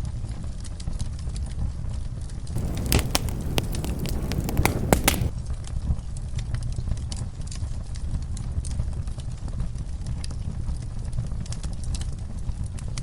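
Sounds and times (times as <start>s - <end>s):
wood fire crackling and popping: 2.6s - 5.3s.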